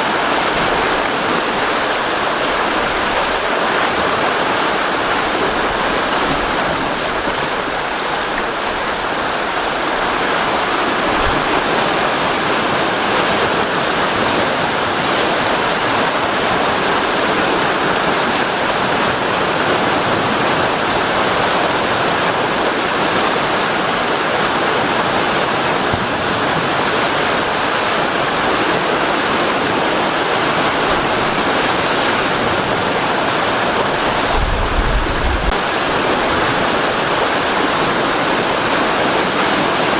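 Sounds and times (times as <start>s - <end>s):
waves and spray rushing: 0.0s - 39.9s
wind thump on microphone: 34.0s - 35.7s.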